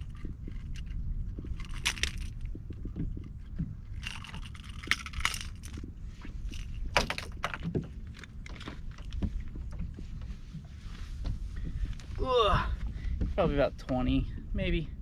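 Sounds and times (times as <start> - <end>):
rattling and clinking in a boat: 0.0 - 15.0
metal fishing hooks jangling: 4.0 - 5.8.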